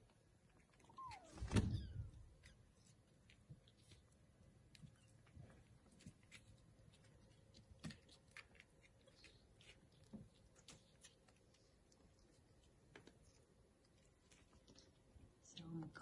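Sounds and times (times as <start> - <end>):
kittens moving in bedding: 0.9 - 4.1.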